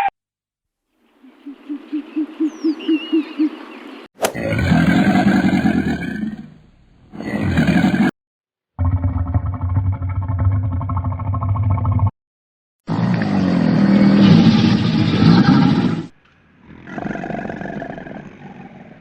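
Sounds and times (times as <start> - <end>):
large animal growling: 4.4 - 8.1, 8.8 - 12.1, 12.9 - 19.0
large animal roaring: 4.4 - 8.1, 8.8 - 12.1, 12.9 - 19.0.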